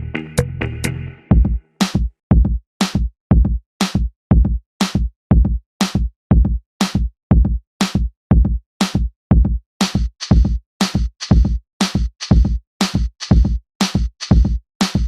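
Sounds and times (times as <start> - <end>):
electronic music with drum-machine beat: 0.0 - 2.0, 9.4 - 15.0.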